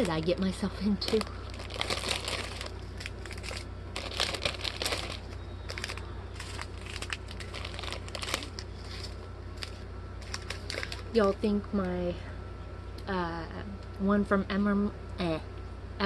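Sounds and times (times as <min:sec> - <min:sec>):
plastic bags crinkling: 0:00.0 - 0:11.5.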